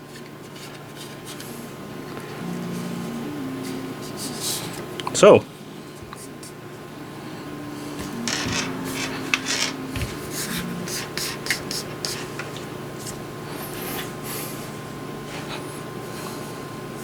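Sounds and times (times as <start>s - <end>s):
hands rustling and scraping cable: 0.0s - 1.5s, 8.0s - 13.2s
faint steady hum: 0.0s - 17.0s.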